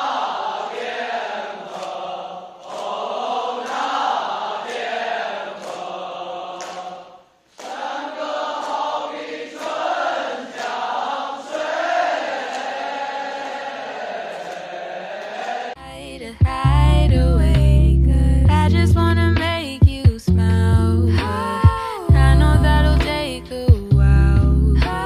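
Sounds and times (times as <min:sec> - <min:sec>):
group of voices singing: 0:00.0 - 0:15.8.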